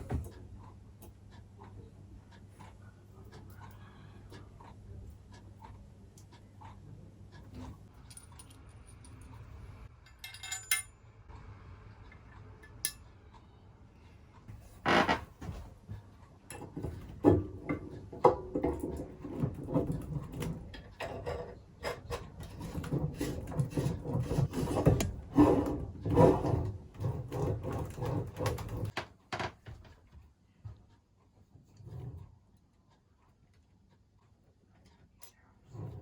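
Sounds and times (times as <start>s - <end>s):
bicycle parts and tools rattling: 10.0s - 11.0s.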